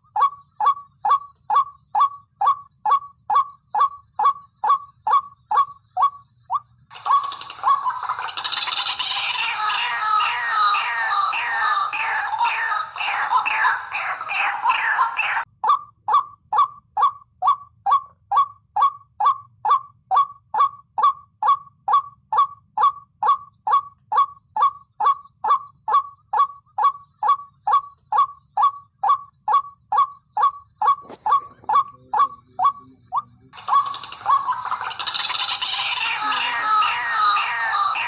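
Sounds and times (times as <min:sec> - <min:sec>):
waterhen calling: 0:06.9 - 0:15.5, 0:30.8 - 0:38.0.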